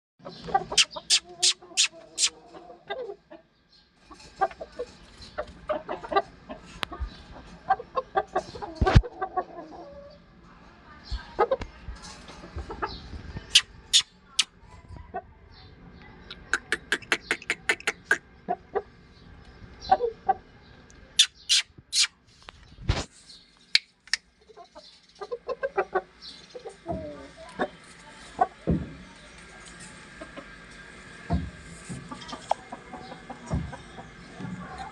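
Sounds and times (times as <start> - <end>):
chickens clucking: 0.2 - 10.2, 11.1 - 14.5, 16.2 - 19.0, 19.8 - 22.1, 23.7 - 29.5, 30.1 - 34.9
chicken call: 0.6 - 2.4, 16.3 - 18.2, 21.2 - 22.1.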